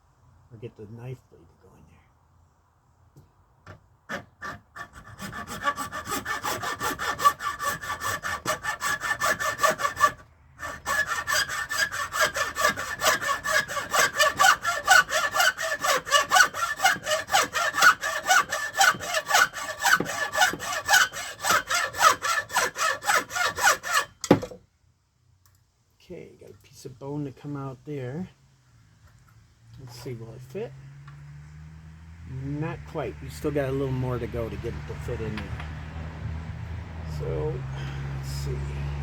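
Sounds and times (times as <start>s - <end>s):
hand saw cutting antler: 4.1s - 24.6s.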